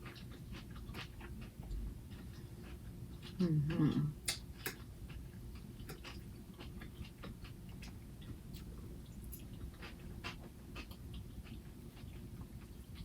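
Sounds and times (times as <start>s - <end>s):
chewing crisp salad: 0.0s - 13.0s
steady low hum: 0.0s - 13.0s.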